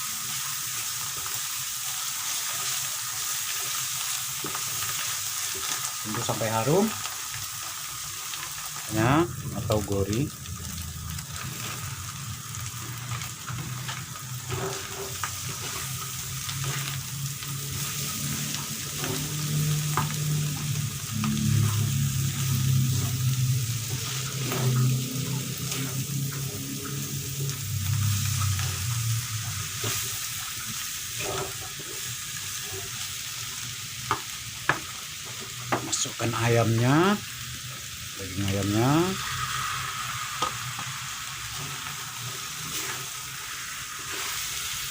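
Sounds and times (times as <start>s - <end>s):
paste sizzling in hot oil: 0.0s - 44.9s
spatula scraping and tapping pan: 13.1s - 17.0s.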